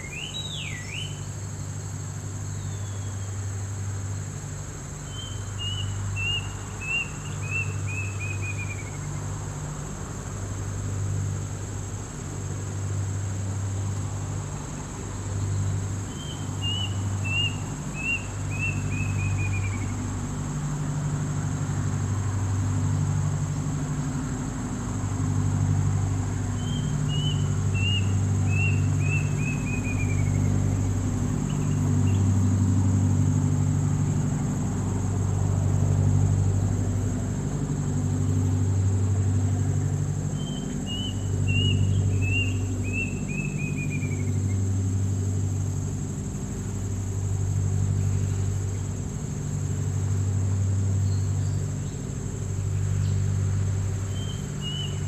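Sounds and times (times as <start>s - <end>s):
bird chirping: 0.0s - 1.4s, 2.5s - 3.3s, 5.0s - 9.2s, 15.5s - 20.1s, 26.6s - 32.3s, 40.3s - 44.6s, 54.0s - 55.0s.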